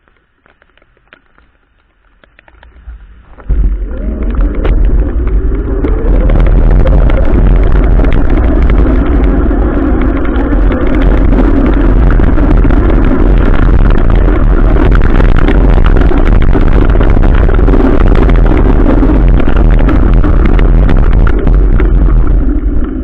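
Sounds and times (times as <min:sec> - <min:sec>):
wind on microphone: 0:02.5 - 0:23.0.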